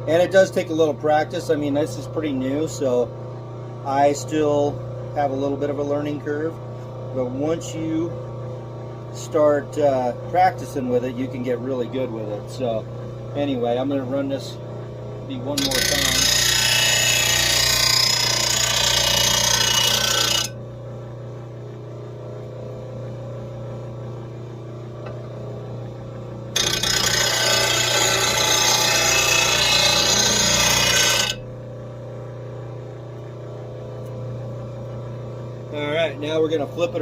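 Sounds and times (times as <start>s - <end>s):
steady low hum: 0.0s - 37.0s
blade sharpener grinding: 15.5s - 20.6s, 26.6s - 31.4s.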